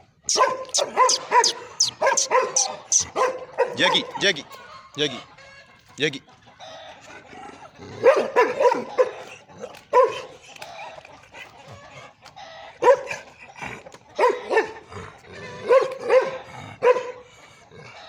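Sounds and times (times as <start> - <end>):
dog barking: 0.3 - 4.2, 8.0 - 9.3, 9.9 - 10.4, 12.8 - 13.2, 14.2 - 14.8, 15.6 - 17.2.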